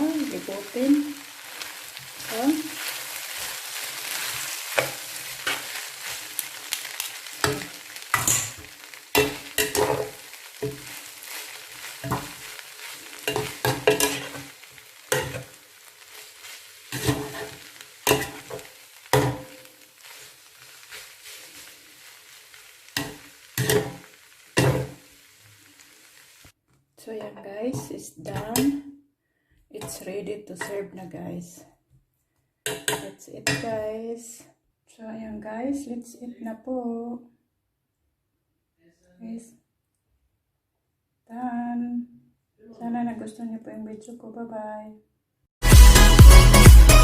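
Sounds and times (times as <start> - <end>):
soft sizzle: 0.0 - 26.6
utensil scraping and knocking pan: 7.4 - 14.5, 16.9 - 19.6.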